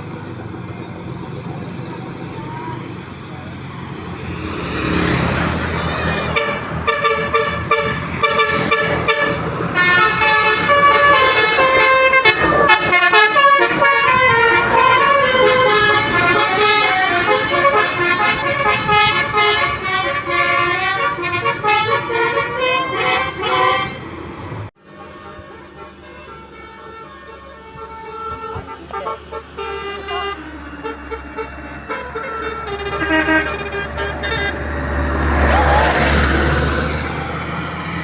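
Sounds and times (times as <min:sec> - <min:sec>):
vehicle noise: 0:00.0 - 0:38.0
multi-trumpet air horn tune: 0:06.0 - 0:24.1, 0:25.2 - 0:34.7.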